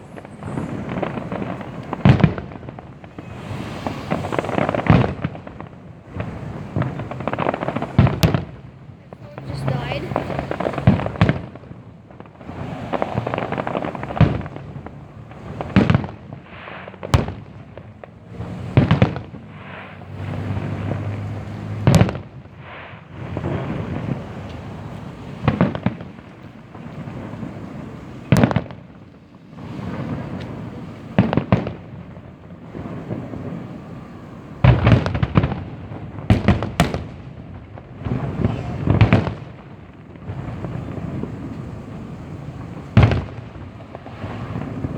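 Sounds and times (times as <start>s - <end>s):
fireworks bangs: 0.0s - 44.9s.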